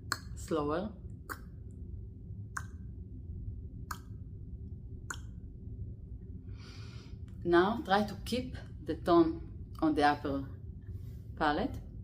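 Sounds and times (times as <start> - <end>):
tongue clicks: 0.0 - 0.4, 1.1 - 1.7, 2.5 - 2.9, 3.9 - 4.2, 5.0 - 5.4.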